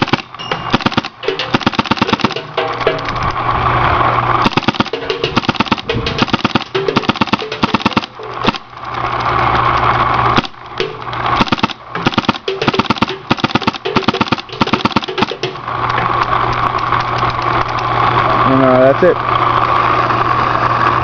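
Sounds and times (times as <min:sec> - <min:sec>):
paintball marker rapid firing: 0:00.0 - 0:03.1, 0:04.4 - 0:08.7, 0:10.4 - 0:15.6
steady hum: 0:00.0 - 0:21.0.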